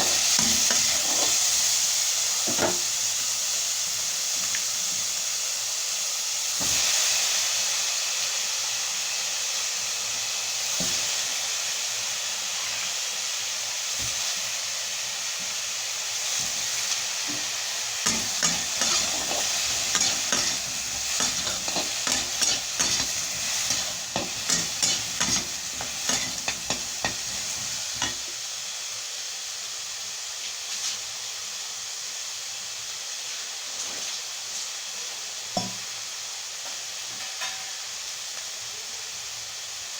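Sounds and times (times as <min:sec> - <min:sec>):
vegetables sizzling in oil: 0:00.0 - 0:39.9
utensil clinking and scraping pan: 0:18.1 - 0:28.2.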